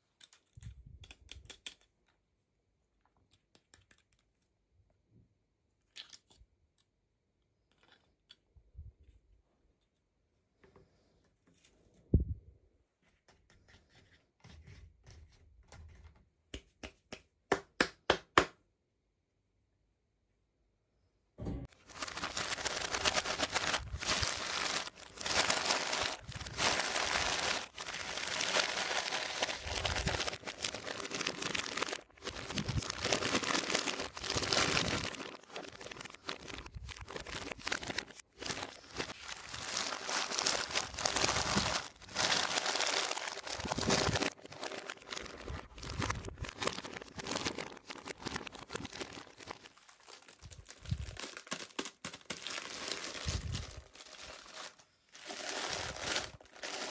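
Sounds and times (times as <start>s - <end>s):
packaging crinkling: 21.7s - 56.9s.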